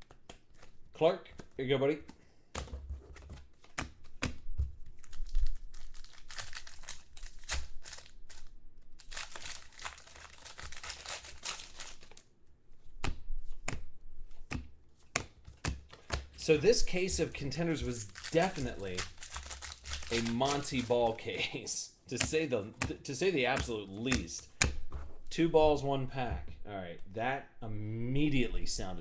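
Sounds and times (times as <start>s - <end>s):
foil wrappers tearing and crinkling: 4.9s - 12.2s, 17.2s - 21.2s.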